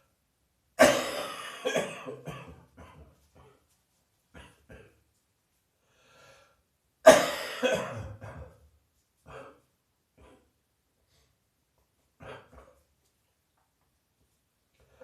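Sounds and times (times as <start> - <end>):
person coughing: 0.8 - 3.6, 7.0 - 8.7, 12.2 - 12.8.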